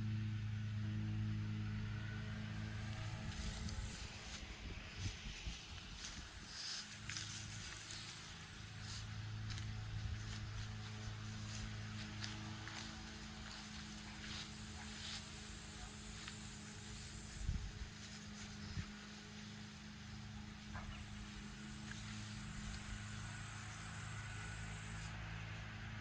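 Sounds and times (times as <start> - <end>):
low hum: 0.0 - 26.0
footsteps: 3.0 - 16.6
loud high hiss: 20.6 - 25.2.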